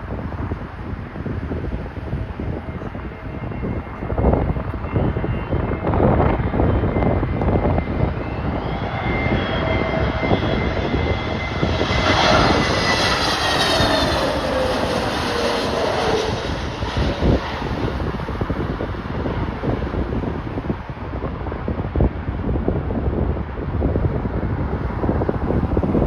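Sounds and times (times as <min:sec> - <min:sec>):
jet airliner engine whine: 0:00.0 - 0:26.0
wind buffeting microphone: 0:00.0 - 0:26.0.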